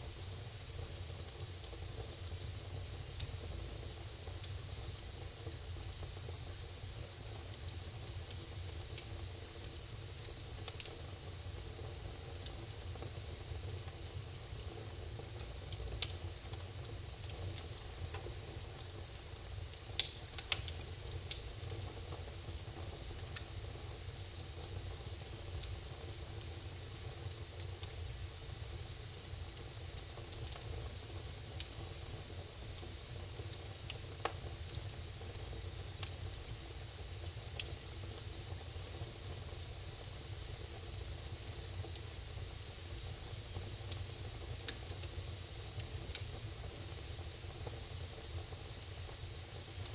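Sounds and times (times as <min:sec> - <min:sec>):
fire crackling and popping: 0:00.0 - 0:49.9
fire rumbling and hissing: 0:00.0 - 0:49.9.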